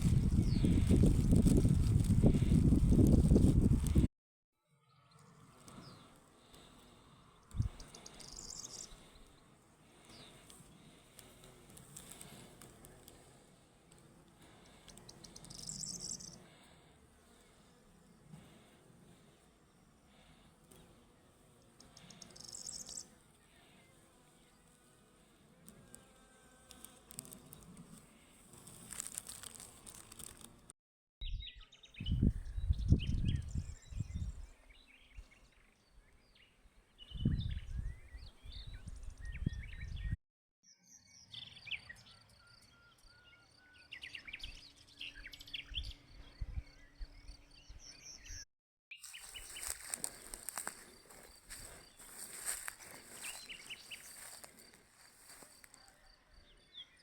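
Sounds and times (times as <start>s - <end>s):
small birds chirping: 0.0s - 4.0s, 7.4s - 12.6s, 14.4s - 18.6s, 21.6s - 24.8s, 31.2s - 57.0s.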